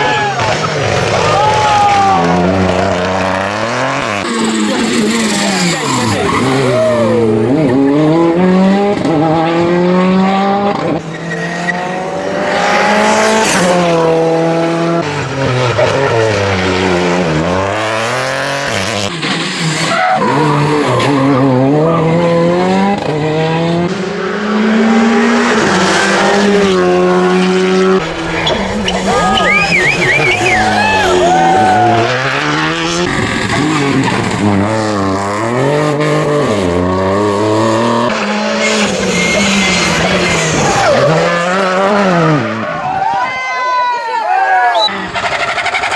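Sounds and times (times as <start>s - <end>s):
tyre squeal and skidding: 0.0s - 8.1s, 10.9s - 14.4s, 15.2s - 22.5s, 27.8s - 41.7s, 44.3s - 45.9s
rally car engine at full throttle: 0.0s - 43.4s, 44.7s - 45.9s.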